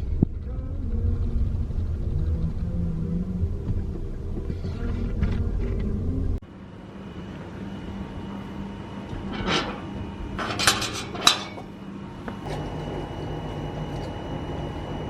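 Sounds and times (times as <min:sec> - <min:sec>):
low steady hum: 0:00.0 - 0:15.0
clattering clicks and knocks: 0:10.4 - 0:11.7.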